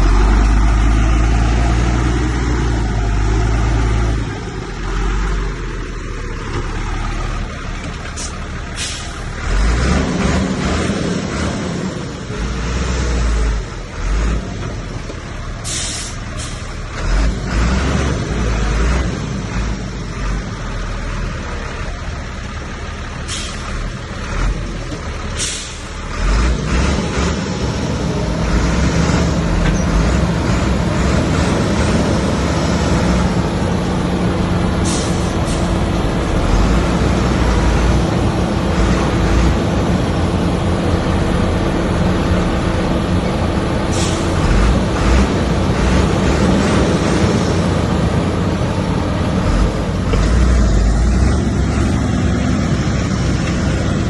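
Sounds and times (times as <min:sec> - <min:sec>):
diesel machinery rumbling: 0:00.0 - 0:54.0
sharp hissing and clanking bursts: 0:08.1 - 0:09.3, 0:15.6 - 0:16.7, 0:23.3 - 0:23.8, 0:25.4 - 0:26.0, 0:34.8 - 0:35.8, 0:43.9 - 0:44.6.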